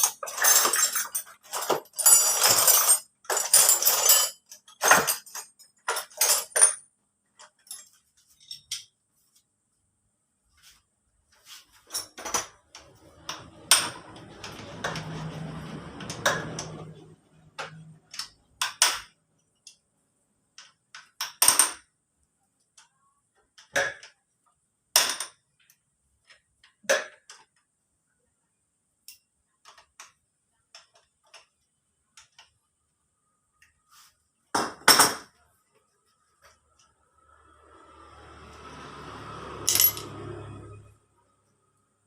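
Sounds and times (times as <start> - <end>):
metal tools clinking and clanking: 0.0 - 9.0, 11.6 - 19.8, 39.6 - 40.9.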